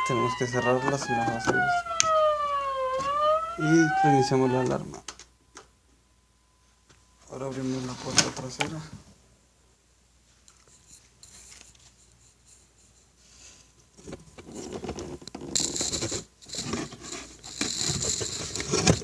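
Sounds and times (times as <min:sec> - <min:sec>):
door scraping and rattling: 0:00.0 - 0:04.8.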